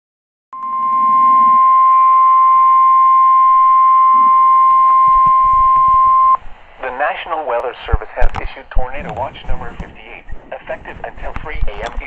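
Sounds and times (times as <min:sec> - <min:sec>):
steady high-pitched alarm tone: 0:00.6 - 0:06.4.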